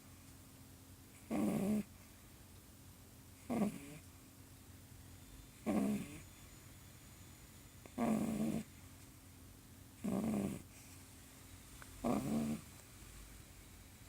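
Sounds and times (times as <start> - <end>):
puppy snoring: 1.1 - 2.0, 3.4 - 4.2, 5.5 - 6.5, 7.8 - 8.8, 10.0 - 11.0, 12.0 - 12.8.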